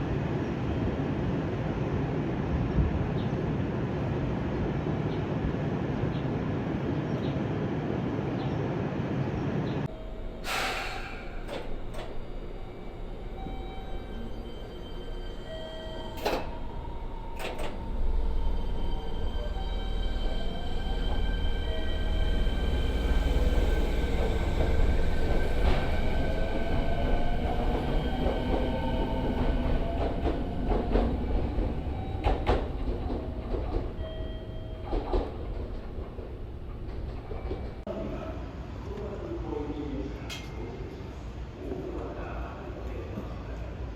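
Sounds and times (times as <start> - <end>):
train rumbling roar: 8.8 - 38.7
compressed-air hiss: 10.4 - 11.5.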